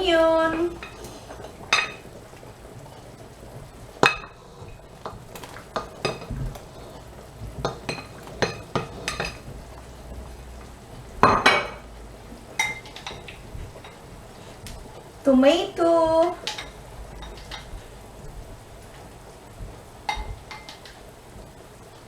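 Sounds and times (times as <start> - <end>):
utensils clinking against pots: 0.0 - 2.2, 4.0 - 9.9, 10.6 - 14.6, 15.4 - 18.3, 20.0 - 21.1
low steady hum: 0.0 - 22.0.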